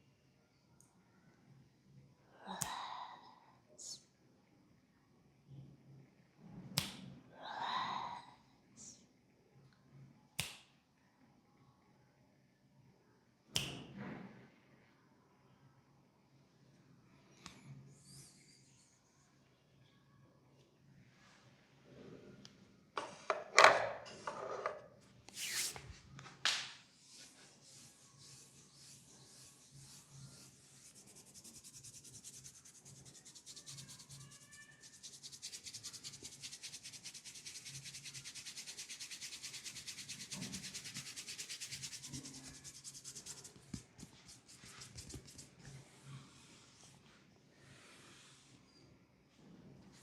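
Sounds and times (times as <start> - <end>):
hands rubbing: 27.0 - 45.8.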